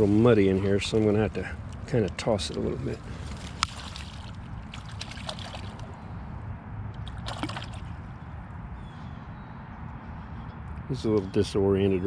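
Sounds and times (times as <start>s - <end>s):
water and wind noise: 0.0s - 9.0s
fish slapping water surface: 3.2s - 6.0s, 7.0s - 7.9s.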